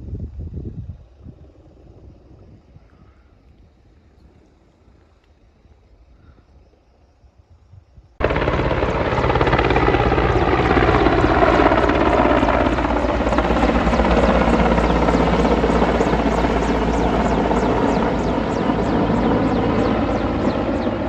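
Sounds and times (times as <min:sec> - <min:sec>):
helicopter rotor chop: 0:08.2 - 0:21.0.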